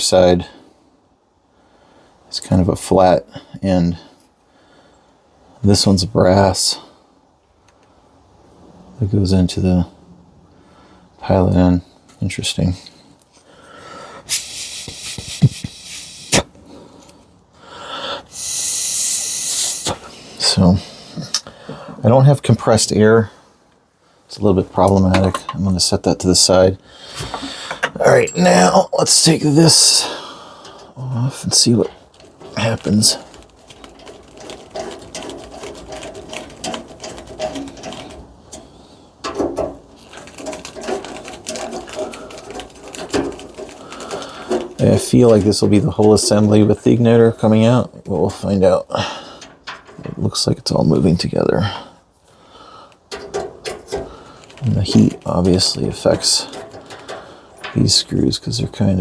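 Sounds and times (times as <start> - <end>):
airy hiss of blown air: 14.2 - 16.5, 18.2 - 20.1
knock or scrape: 14.3 - 16.4.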